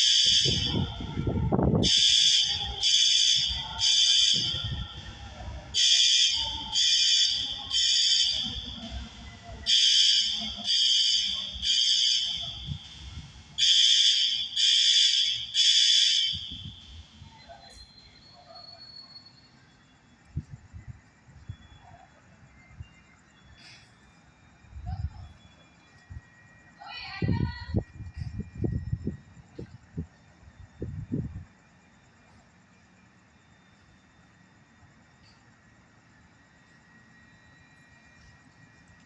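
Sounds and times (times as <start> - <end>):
fire alarm horn beeping: 0.0 - 20.0.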